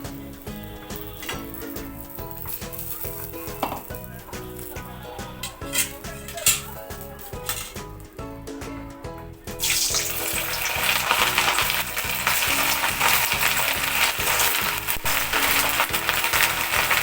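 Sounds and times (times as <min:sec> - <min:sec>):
food deep-frying in oil: 0:09.6 - 0:17.0.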